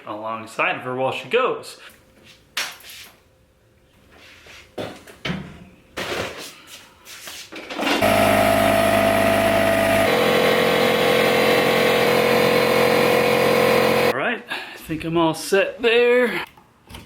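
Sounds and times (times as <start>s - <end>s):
motorised machine running: 7.9s - 14.1s.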